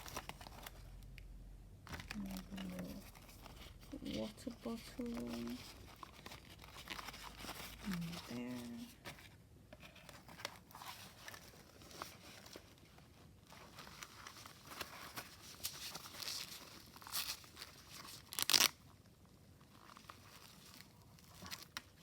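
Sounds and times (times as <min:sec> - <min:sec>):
rustling of fabric pouch: 0:01.8 - 0:19.0.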